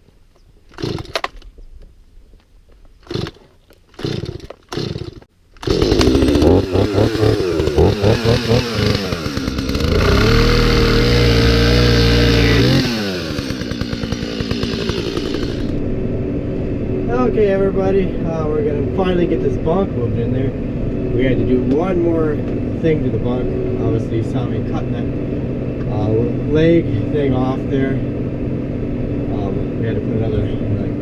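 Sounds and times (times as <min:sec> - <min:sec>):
chainsaw cutting wood: 0:00.7 - 0:01.4, 0:03.0 - 0:15.8.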